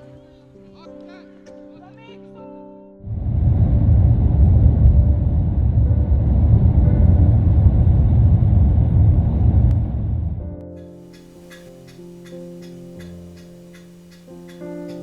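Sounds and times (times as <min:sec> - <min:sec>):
car road and engine rumble: 0:03.1 - 0:10.6.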